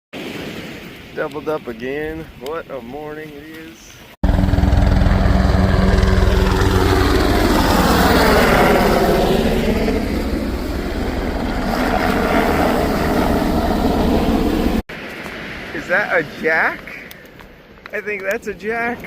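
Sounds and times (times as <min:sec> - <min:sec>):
engine drone: 0:04.2 - 0:14.8.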